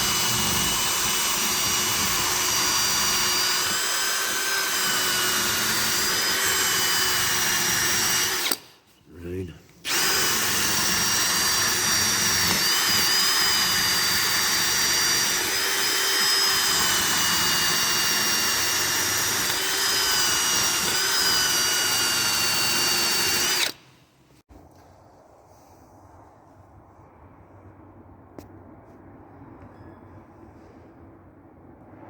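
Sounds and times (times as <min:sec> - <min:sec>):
power drill whining: 0:00.0 - 0:08.7, 0:09.8 - 0:23.8.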